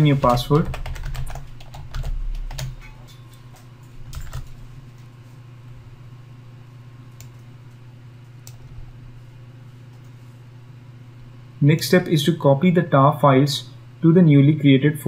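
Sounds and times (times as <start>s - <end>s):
keyboard typing: 0.0s - 2.9s, 4.1s - 4.6s
steady low hum: 0.0s - 15.0s.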